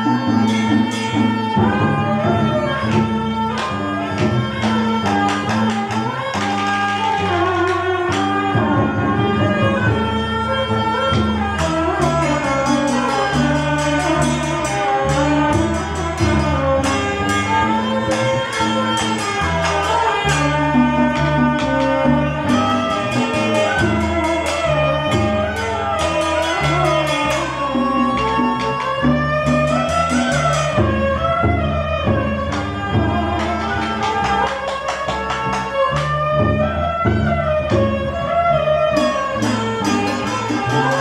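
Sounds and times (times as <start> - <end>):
instrumental music with percussion beat: 0.0 - 41.0.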